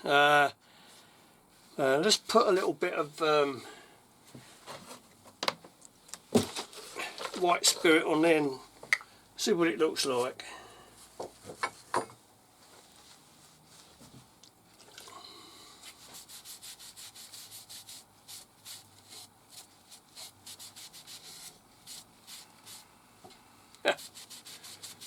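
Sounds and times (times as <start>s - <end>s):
rag rubbing on wood: 16.0s - 22.8s, 23.9s - 25.0s.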